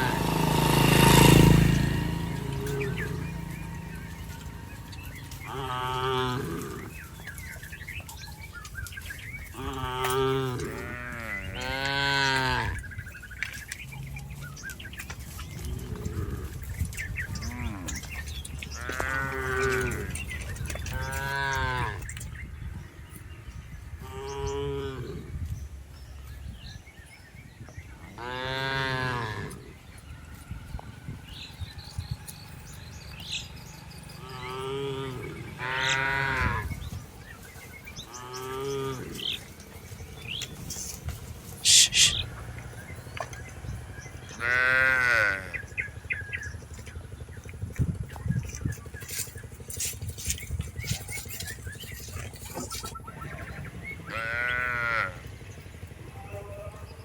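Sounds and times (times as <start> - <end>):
cattle mooing: 0.0 - 7.4, 9.5 - 12.8, 15.6 - 16.8, 17.4 - 22.2, 24.0 - 25.4, 28.1 - 29.9, 34.2 - 36.8, 38.0 - 39.6, 41.6 - 42.3, 44.3 - 45.7, 51.1 - 55.4.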